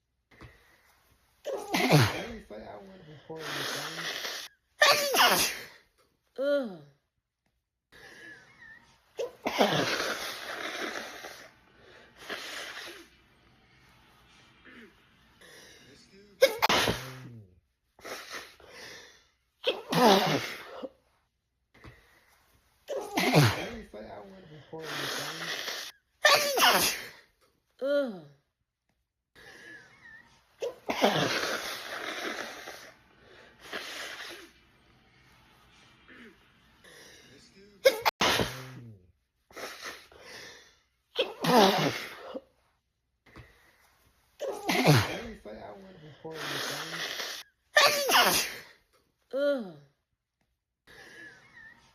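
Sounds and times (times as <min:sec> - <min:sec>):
woman sneezing: 0:01.4 - 0:05.8, 0:08.6 - 0:11.4, 0:16.4 - 0:17.4, 0:19.6 - 0:20.9, 0:22.9 - 0:27.2, 0:30.1 - 0:32.9, 0:37.8 - 0:38.9, 0:41.2 - 0:42.4, 0:44.4 - 0:48.8.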